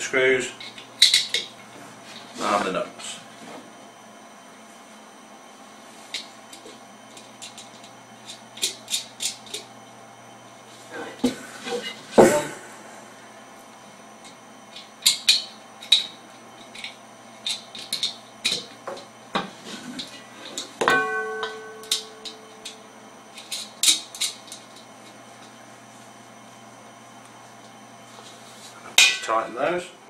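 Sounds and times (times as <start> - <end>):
metal lid ringing: 20.8 - 22.8, 29.0 - 29.5.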